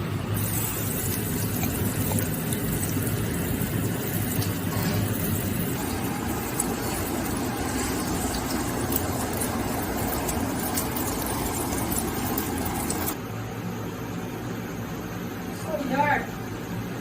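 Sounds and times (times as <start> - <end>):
motor hum: 0.0 - 13.2
food sizzling in a wok: 0.3 - 13.2.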